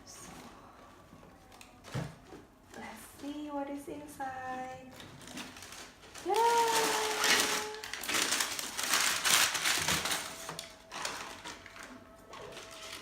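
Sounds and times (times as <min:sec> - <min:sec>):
packaging rustling and crinkling: 0:04.8 - 0:13.0.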